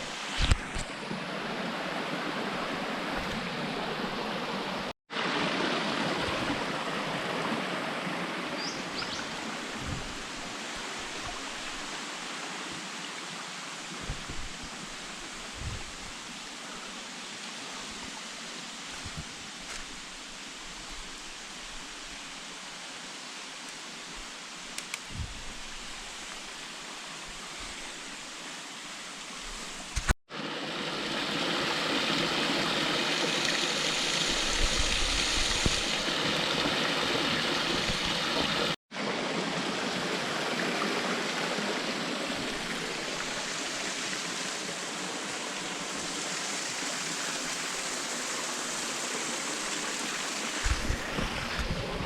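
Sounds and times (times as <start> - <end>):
rushing stream water: 0.0 - 52.0.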